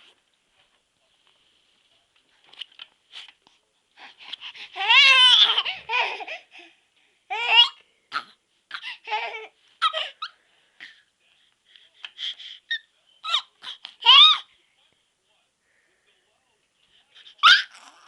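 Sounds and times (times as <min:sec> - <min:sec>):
baby laughing and squealing: 0:04.8 - 0:06.4, 0:07.3 - 0:10.4, 0:12.6 - 0:14.5, 0:17.4 - 0:18.0.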